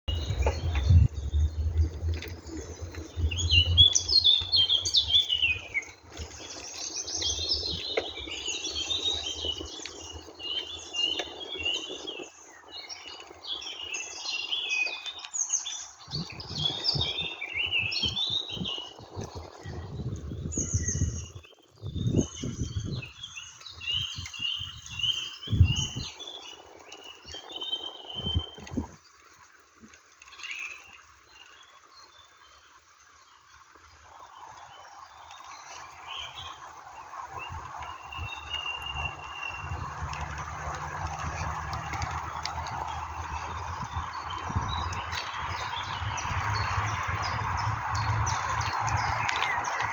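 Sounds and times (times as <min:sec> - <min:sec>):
low rumble: 0:00.1 - 0:06.4
birds chirping and singing: 0:00.1 - 0:28.9, 0:35.5 - 0:49.9.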